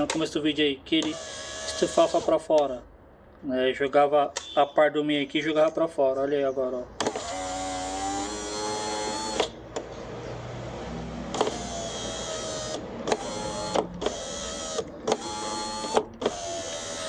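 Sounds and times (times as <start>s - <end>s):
window motor clicks: 7.0s - 9.9s, 11.3s - 17.0s
power window motor whine: 11.1s - 17.0s.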